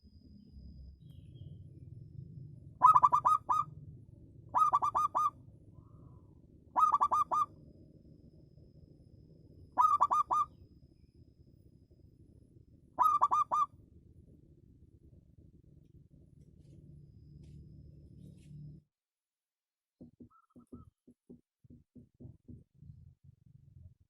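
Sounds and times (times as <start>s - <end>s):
dove cooing: 2.8s - 3.8s, 4.5s - 7.6s, 9.8s - 10.5s, 13.0s - 13.7s.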